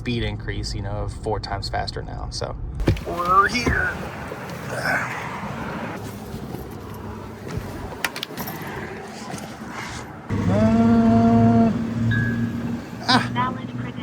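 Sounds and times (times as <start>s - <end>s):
machine whining and humming: 10.3s - 14.0s.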